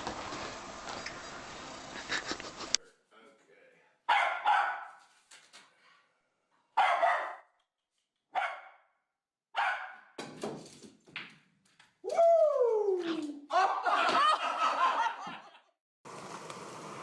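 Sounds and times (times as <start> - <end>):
dog barking: 4.1 - 5.0, 6.8 - 7.5, 8.4 - 8.9, 9.6 - 10.2.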